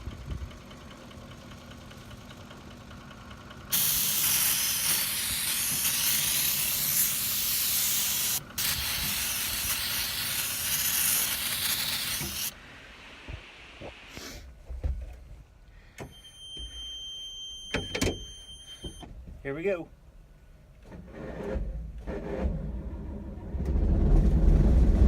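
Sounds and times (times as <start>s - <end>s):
aerosol can spraying: 3.7s - 12.6s.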